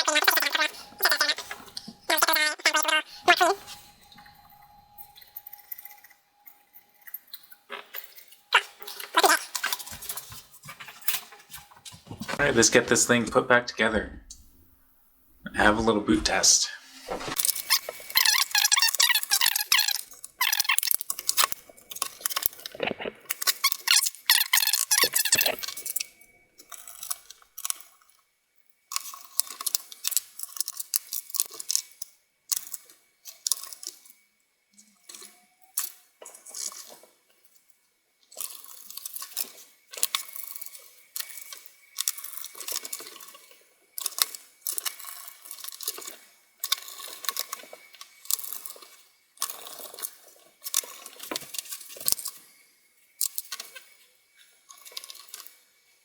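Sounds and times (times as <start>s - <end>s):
faint high tone: 0.0s - 9.6s
clicks and rattles of small parts: 0.0s - 12.4s, 17.4s - 55.6s.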